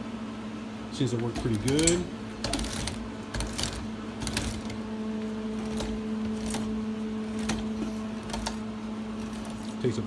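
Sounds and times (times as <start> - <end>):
steady low hum: 0.0 - 10.0
metallic chain clicks and rattles: 1.4 - 4.8.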